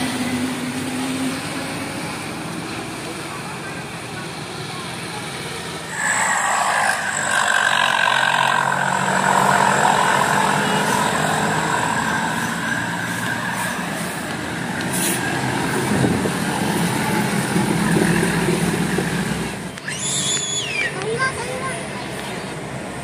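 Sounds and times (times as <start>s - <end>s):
bus diesel engine under load: 0.0s - 23.0s
multi-tone air horn: 5.9s - 14.2s.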